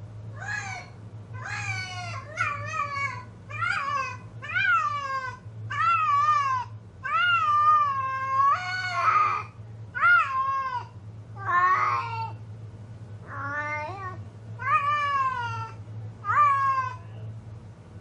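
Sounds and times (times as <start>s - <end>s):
steady low hum: 0.0s - 18.0s
cat meowing: 13.3s - 17.1s.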